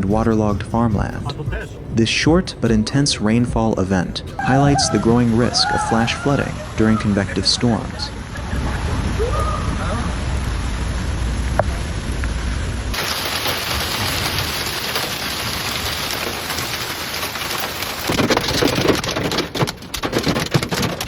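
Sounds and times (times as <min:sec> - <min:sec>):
low rumble: 0:00.0 - 0:13.0
heavy rain pouring: 0:01.4 - 0:21.0.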